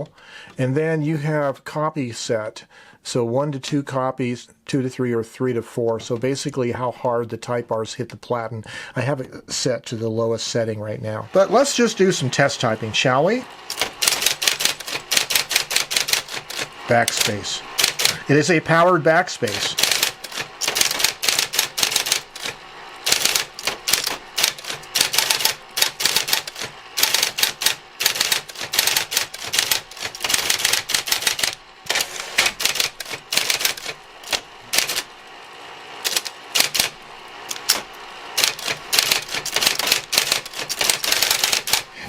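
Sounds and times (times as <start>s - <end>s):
electric typewriter typing: 11.4s - 35.3s, 36.0s - 42.0s.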